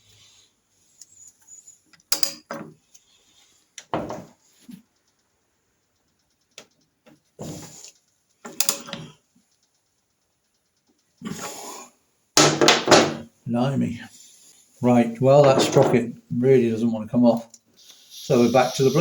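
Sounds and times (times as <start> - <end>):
metallic knocks and clanks: 3.9 - 4.4, 12.4 - 13.3, 15.4 - 16.1.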